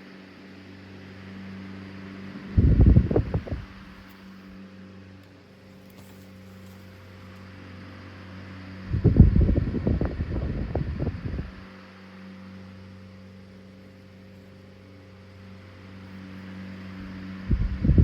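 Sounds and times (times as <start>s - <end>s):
fan airflow buffeting microphone: 0.0s - 18.0s
fan motor hum: 0.0s - 18.0s.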